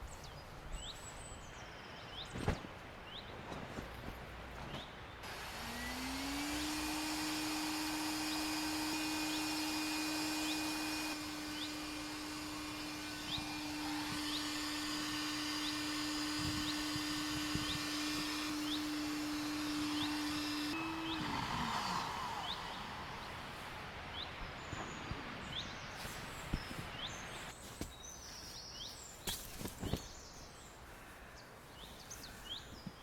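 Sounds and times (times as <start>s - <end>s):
small electric motor whining: 5.2s - 23.9s
rising bird chirps: 20.8s - 27.4s.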